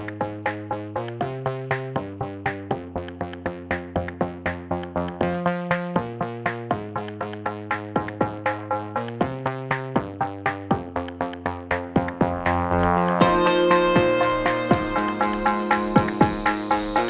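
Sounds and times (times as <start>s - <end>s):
held bass notes: 8.3s - 17.0s
quick pitched notes: 11.8s - 17.0s.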